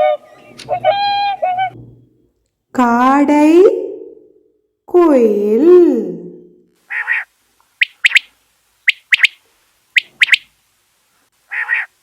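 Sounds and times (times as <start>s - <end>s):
harsh bird call: 6.9s - 8.3s, 8.9s - 9.4s, 10.0s - 10.5s, 11.5s - 12.0s
quail calling: 6.9s - 9.4s, 10.0s - 10.5s, 11.5s - 12.0s.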